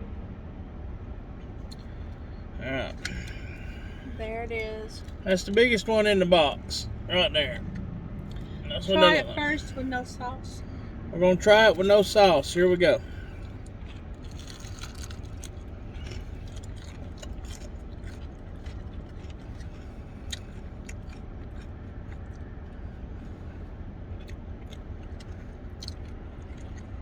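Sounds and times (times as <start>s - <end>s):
low rumble: 0.0s - 12.2s
person chewing crispy food: 1.5s - 4.2s, 12.9s - 27.0s.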